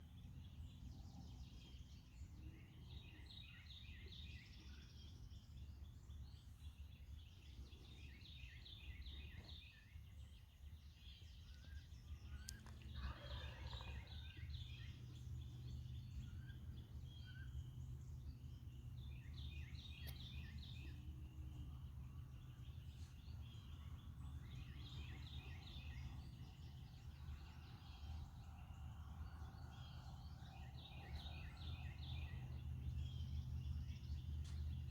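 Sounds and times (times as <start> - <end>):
low background rumble: 0.0 - 34.9.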